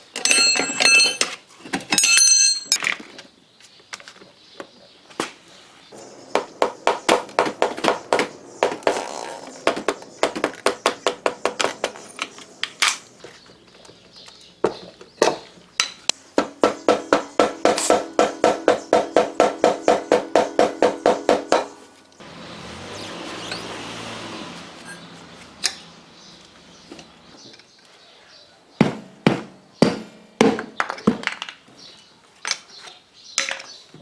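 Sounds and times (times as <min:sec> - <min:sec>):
rubber mallet beating tyre: 0:06.0 - 0:13.2, 0:16.2 - 0:26.9, 0:28.8 - 0:30.8.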